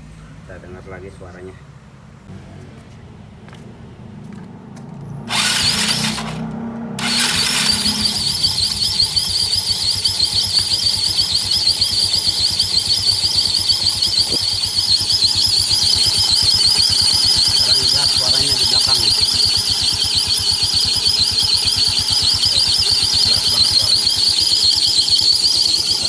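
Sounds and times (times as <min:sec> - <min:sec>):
scooter engine starting and running: 0:03.1 - 0:26.0
high-pitched rubbing squeal: 0:05.3 - 0:06.4, 0:07.0 - 0:26.0.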